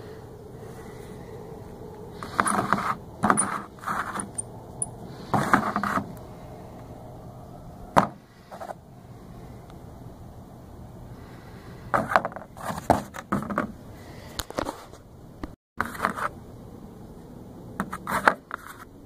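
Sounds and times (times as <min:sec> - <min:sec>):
small parts scraping and clicking: 0:02.2 - 0:06.2.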